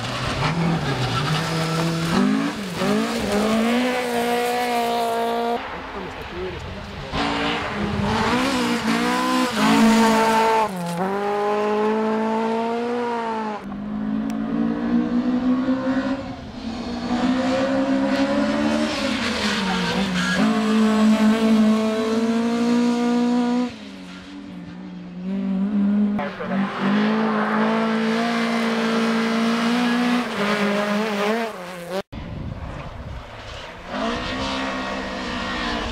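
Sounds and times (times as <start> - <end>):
car engine revving hard: 0.4 - 5.6, 7.2 - 23.7, 25.3 - 32.0.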